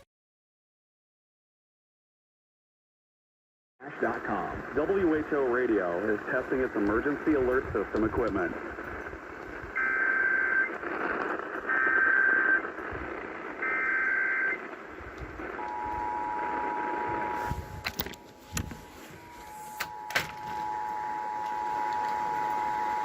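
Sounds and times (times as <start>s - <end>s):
interference clicks: 4.1s - 18.8s, 19.8s - 23.0s.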